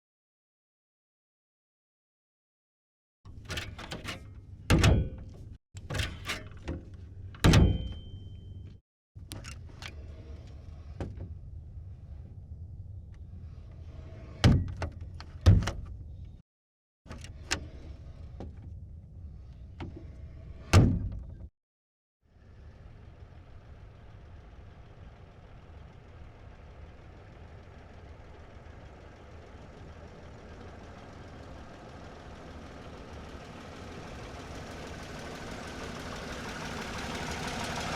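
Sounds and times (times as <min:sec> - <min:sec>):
car engine idling: 0:22.4 - 0:37.9.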